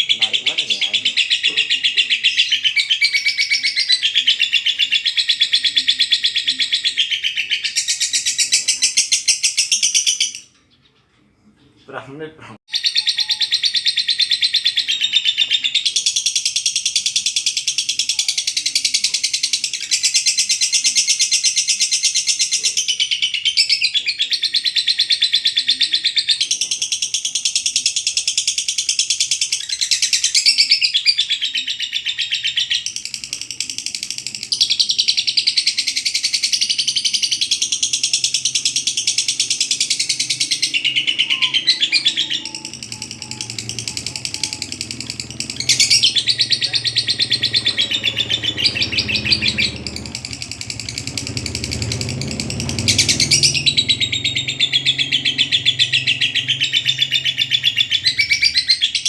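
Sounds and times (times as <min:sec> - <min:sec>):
lovebird rattling chatter: 0:32.7 - 0:58.9.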